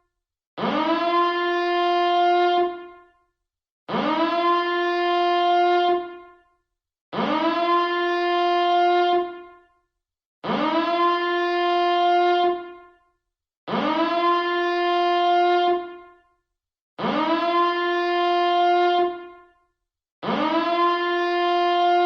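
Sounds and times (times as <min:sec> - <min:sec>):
rising alarm siren blasts: 0:07.2 - 0:08.4, 0:10.4 - 0:11.7, 0:13.7 - 0:15.0, 0:17.0 - 0:19.2, 0:20.2 - 0:22.0.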